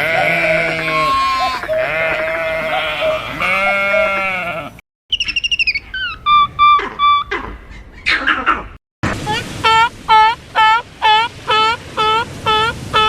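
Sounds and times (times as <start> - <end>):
sheep bleating: 0.0 - 4.8
high-pitched peeps: 5.1 - 8.6.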